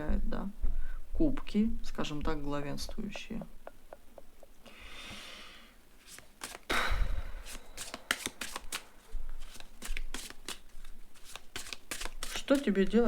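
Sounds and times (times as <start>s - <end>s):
cards shuffling: 6.0s - 12.9s
quick card clicks: 6.1s - 12.4s.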